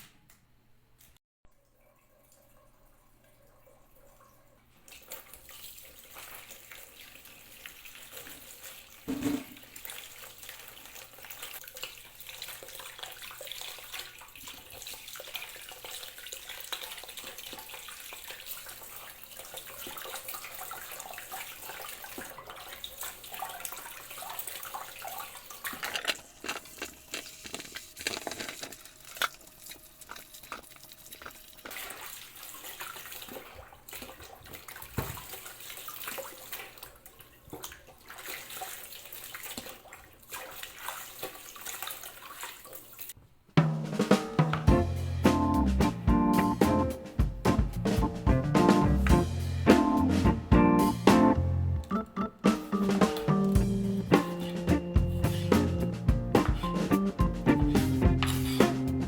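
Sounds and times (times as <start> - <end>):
water running from tap into sink: 4.9 - 37.0.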